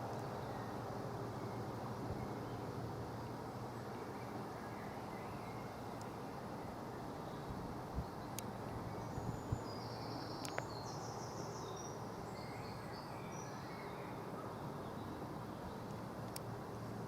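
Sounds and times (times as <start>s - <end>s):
small birds chirping: 7.2s - 16.5s
faint clicks: 8.3s - 8.5s, 10.4s - 10.7s, 15.8s - 16.5s.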